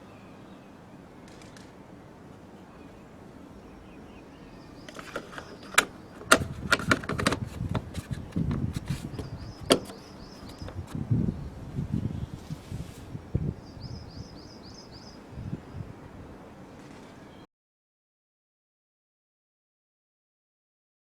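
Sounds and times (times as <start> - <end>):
sharp knocks and clicks: 4.9 - 11.0.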